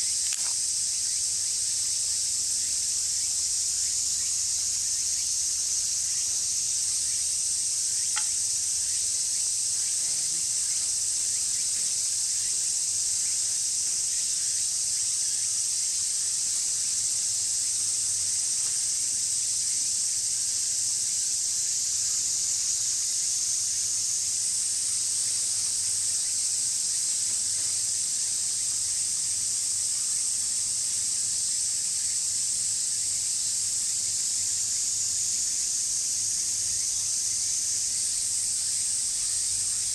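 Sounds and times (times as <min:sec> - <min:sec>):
insects buzzing: 0:00.0 - 0:39.9
faint click: 0:00.2 - 0:00.6, 0:08.1 - 0:08.4.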